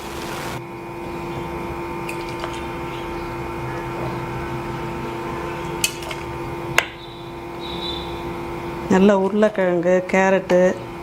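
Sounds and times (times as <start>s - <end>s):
machine hum: 0.0s - 0.7s.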